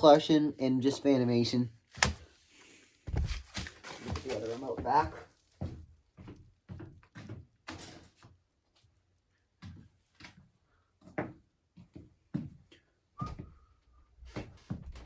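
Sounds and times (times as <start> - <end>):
brief squeak: 13.2 - 13.6.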